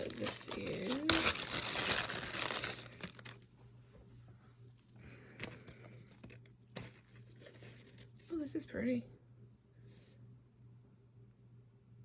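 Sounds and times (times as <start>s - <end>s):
packaging torn and unwrapped: 0.0s - 3.4s.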